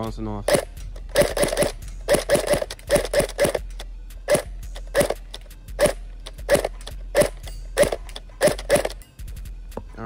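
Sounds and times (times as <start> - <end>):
airsoft gun shots: 0.5 - 3.7, 4.3 - 9.0.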